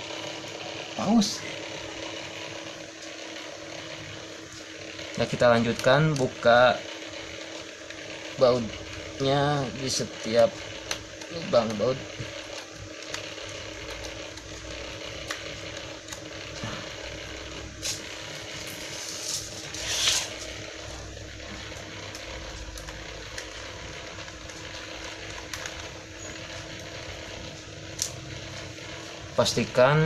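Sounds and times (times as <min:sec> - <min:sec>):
steady hum: 0:00.0 - 0:30.0
scraping rustle: 0:17.9 - 0:20.6.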